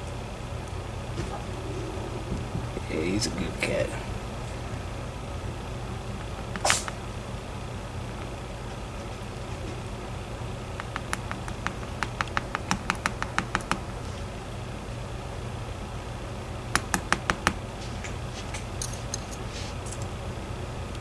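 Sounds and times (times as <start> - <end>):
low hum: 0.0 - 11.5.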